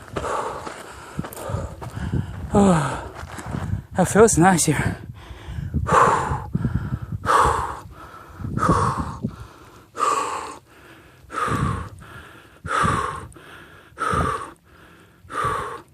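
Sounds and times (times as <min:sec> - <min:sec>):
person breathing heavily: 0:00.0 - 0:04.0, 0:04.7 - 0:15.9.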